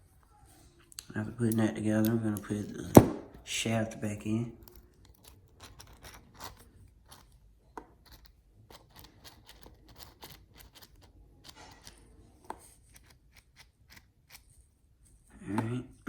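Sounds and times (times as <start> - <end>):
small parts clicking and tapping: 4.6 - 14.5.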